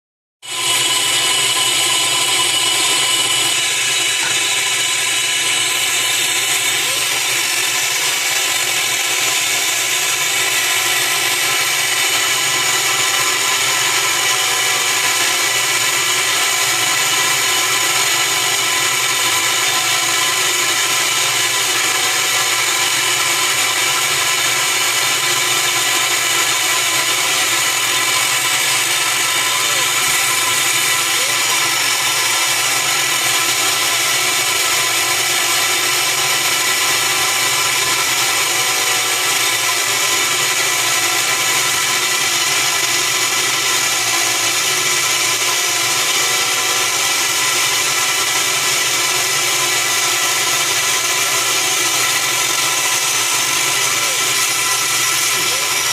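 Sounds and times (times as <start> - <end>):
high whining tones: 0.4 - 43.9.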